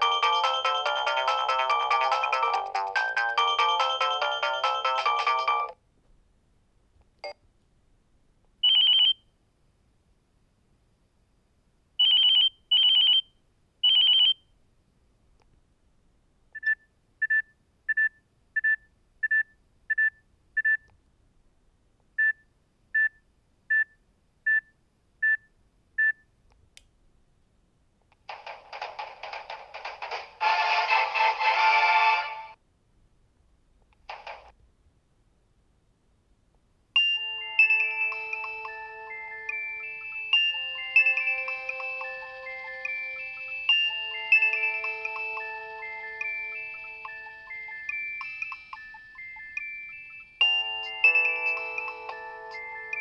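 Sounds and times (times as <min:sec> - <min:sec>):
polyphonic ringtone melody: 0:00.0 - 0:05.8, 0:37.0 - 0:53.0.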